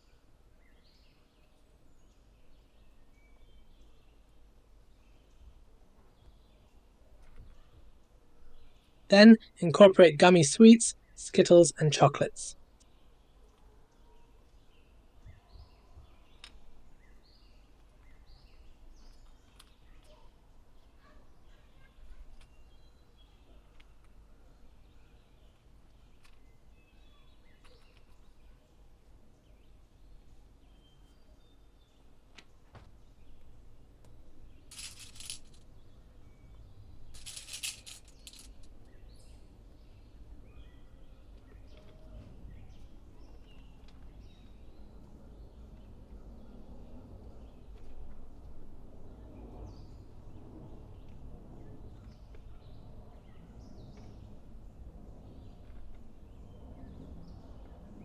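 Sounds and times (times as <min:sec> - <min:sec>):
faint bird chirps: 0:12.8 - 0:33.5
hard sweets clattering: 0:34.7 - 0:35.6, 0:37.2 - 0:38.7.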